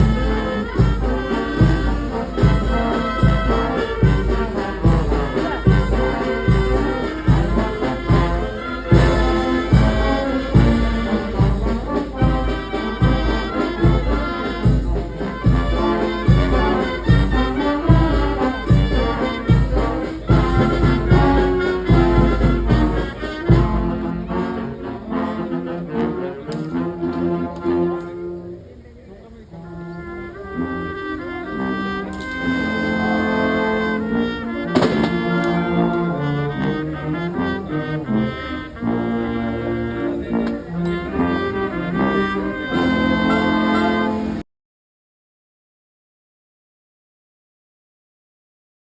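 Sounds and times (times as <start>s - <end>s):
trumpets and trombones: 0.0s - 44.4s
bass drum beat: 13.9s - 23.8s.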